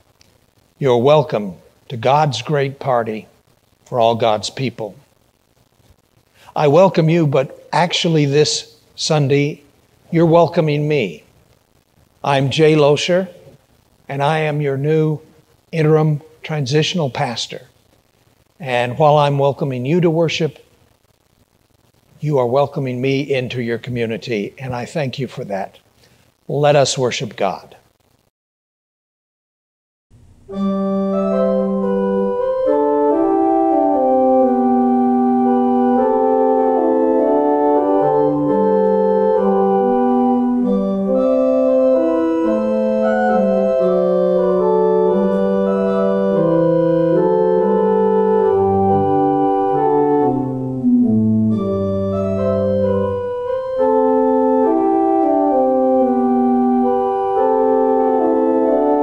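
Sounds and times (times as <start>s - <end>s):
organ playing sustained chords: 30.5s - 59.0s.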